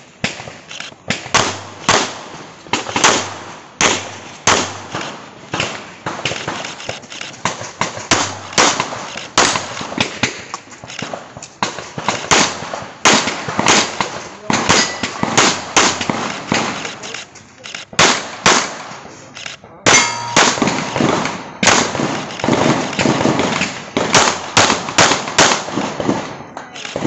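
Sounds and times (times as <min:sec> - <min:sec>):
handgun shots with echo: 0:03.0 - 0:13.9, 0:14.6 - 0:17.1, 0:19.8 - 0:25.6.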